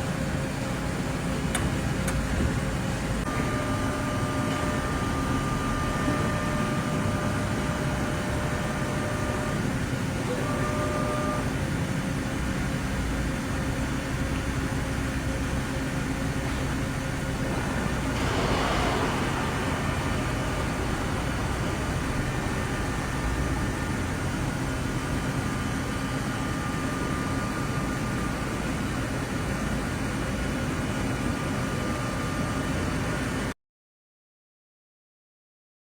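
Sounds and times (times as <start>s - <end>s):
lathe mechanical hum: 0.0s - 33.5s
brief rushing sound: 16.7s - 25.9s.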